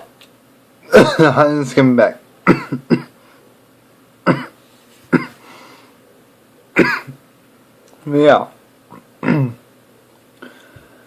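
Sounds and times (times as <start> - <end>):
person coughing: 0.9 - 1.4, 2.4 - 3.2, 4.2 - 5.4, 6.8 - 7.2, 9.2 - 9.6.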